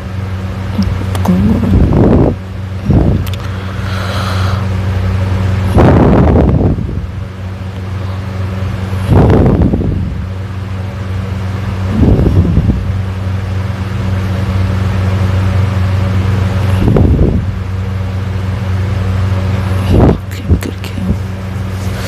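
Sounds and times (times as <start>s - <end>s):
steady low hum: 0.0s - 22.0s
person snoring: 3.2s - 4.7s.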